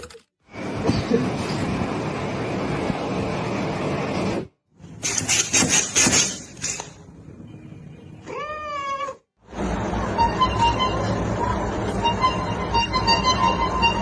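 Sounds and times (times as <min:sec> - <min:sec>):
cat meowing: 0:08.2 - 0:09.3.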